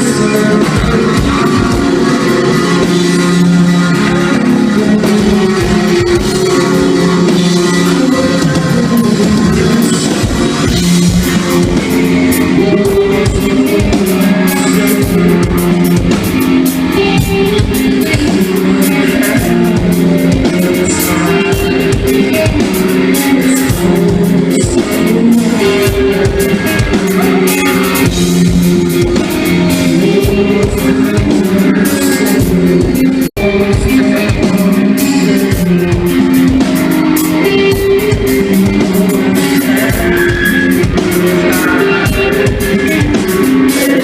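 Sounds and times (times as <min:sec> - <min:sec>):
drum kit beat: 0:00.0 - 0:44.0
loud electric guitars: 0:00.0 - 0:44.0.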